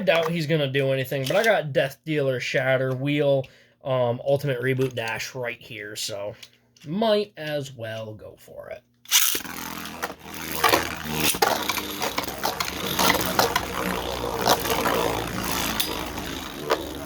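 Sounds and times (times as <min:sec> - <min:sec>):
spinning tops whirring: 0:09.1 - 0:17.0.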